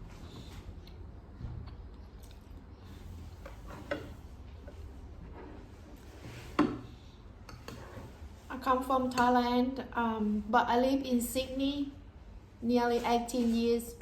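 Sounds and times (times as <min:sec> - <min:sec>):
person chewing food: 0:00.8 - 0:02.7.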